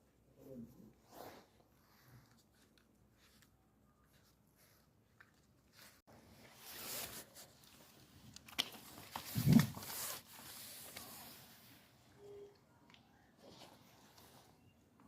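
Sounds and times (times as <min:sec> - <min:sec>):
rustling and scraping: 0:01.0 - 0:11.9.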